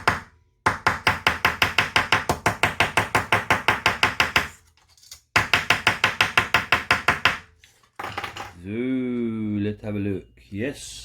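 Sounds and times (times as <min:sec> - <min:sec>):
small hammer tapping rapidly: 0:00.0 - 0:04.5, 0:05.4 - 0:07.4.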